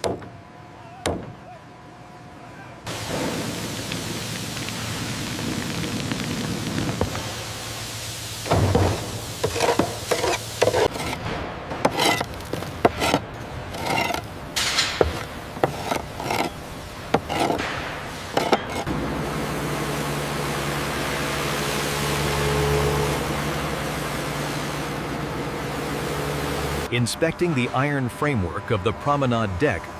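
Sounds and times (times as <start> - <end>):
steady low hum: 6.5 - 29.9.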